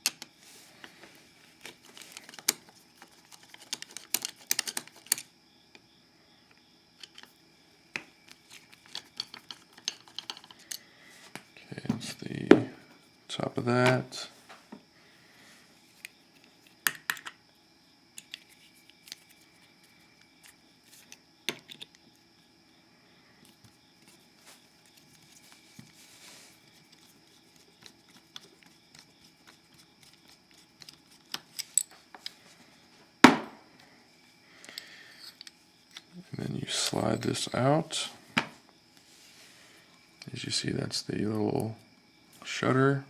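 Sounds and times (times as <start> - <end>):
metal clicks and taps of padlock parts: 16.9 - 17.4.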